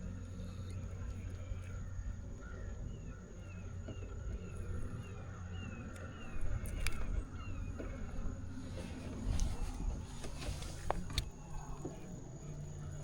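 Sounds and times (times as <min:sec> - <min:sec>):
bird chirping: 0:00.0 - 0:10.1
low rumble: 0:00.0 - 0:13.0.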